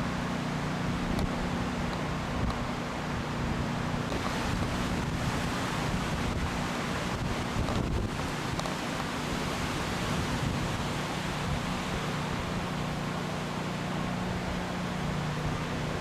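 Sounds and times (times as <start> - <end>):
wind blowing across microphone: 1.0 - 12.7.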